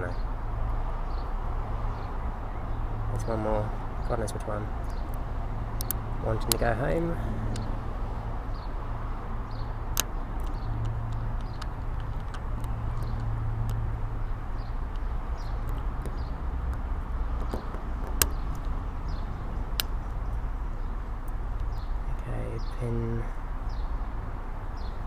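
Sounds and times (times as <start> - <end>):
lock pick ticking and clicking: 5.8 - 6.7.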